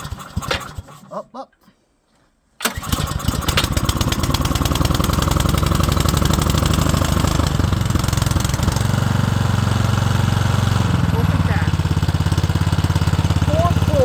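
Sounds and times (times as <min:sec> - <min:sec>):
snowblower engine running: 0:00.0 - 0:01.0, 0:02.6 - 0:14.0.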